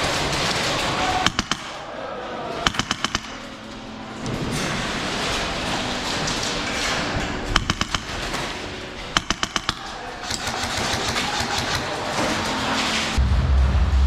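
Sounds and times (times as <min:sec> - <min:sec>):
airsoft gun firing bursts: 0:00.0 - 0:01.8, 0:02.7 - 0:03.4, 0:09.2 - 0:12.0.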